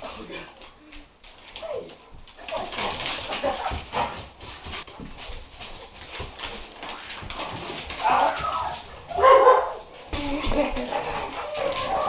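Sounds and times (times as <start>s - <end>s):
scuffling and light knocks: 0.0s - 12.0s
dog whining and whimpering: 10.6s - 12.0s.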